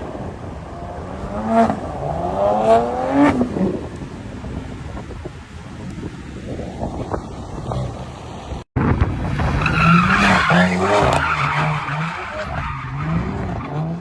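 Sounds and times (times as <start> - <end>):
wind noise: 0.0 - 14.0.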